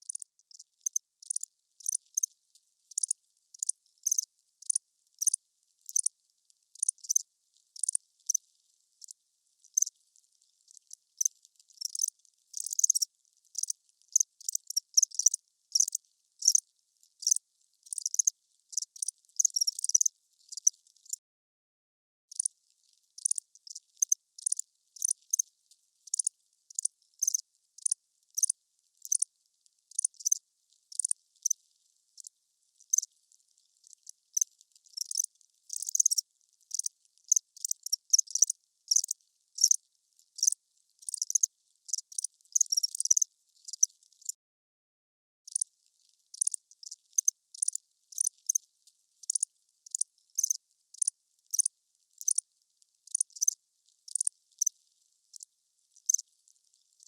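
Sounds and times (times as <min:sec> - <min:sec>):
crickets chirping: 0:00.0 - 0:02.3, 0:02.9 - 0:06.1, 0:06.8 - 0:07.2, 0:07.8 - 0:08.4, 0:11.2 - 0:16.6, 0:17.2 - 0:20.7, 0:23.2 - 0:25.4, 0:26.1 - 0:29.2, 0:29.9 - 0:31.6, 0:34.4 - 0:39.8, 0:40.4 - 0:43.9, 0:47.2 - 0:48.6, 0:49.2 - 0:52.4, 0:53.1 - 0:53.5, 0:54.1 - 0:54.7.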